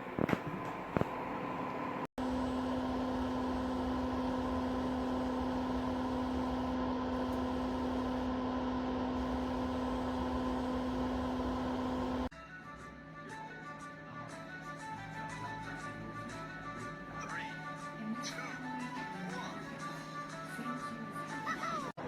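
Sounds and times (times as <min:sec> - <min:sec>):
heater fan humming: 0:00.0 - 0:12.3.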